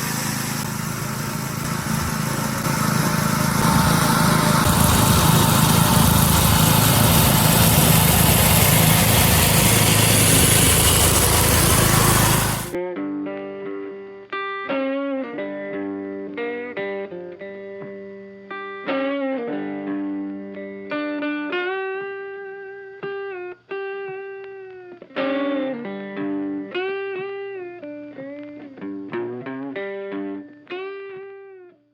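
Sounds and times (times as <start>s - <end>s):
plucked guitar melody: 12.8s - 31.8s.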